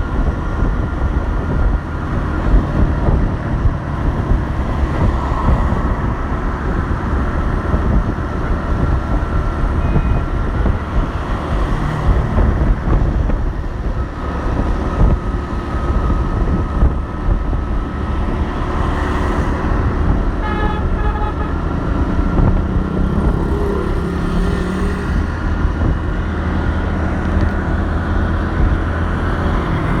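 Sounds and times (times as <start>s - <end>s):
street traffic rumble: 0.0s - 30.0s
car horn tooting: 20.4s - 21.6s.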